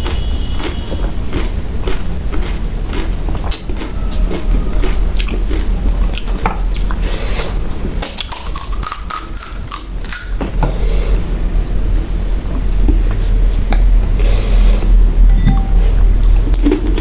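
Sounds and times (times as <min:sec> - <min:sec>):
crisp shells crunching in chewing: 0:00.0 - 0:07.0, 0:08.0 - 0:10.4
steady low hum: 0:09.7 - 0:17.0.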